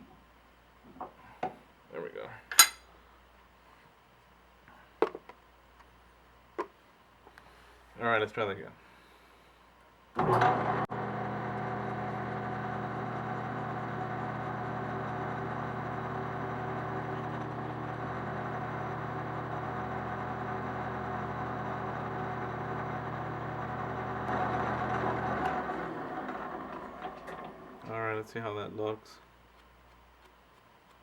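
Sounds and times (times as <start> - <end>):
knurling tool pressing turning stock: 2.5 - 2.8
metal lathe running: 10.2 - 27.9.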